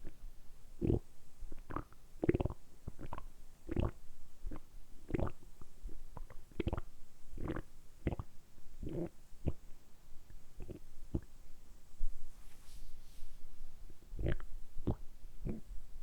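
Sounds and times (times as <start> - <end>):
stomach gurgling: 6.2 - 9.6, 14.2 - 15.7.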